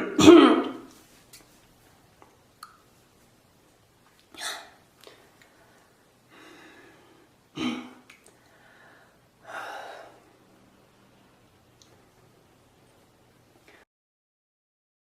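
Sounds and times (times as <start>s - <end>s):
person coughing: 0.0s - 0.9s, 7.5s - 8.0s
gasping breath: 4.3s - 7.3s, 8.4s - 10.3s.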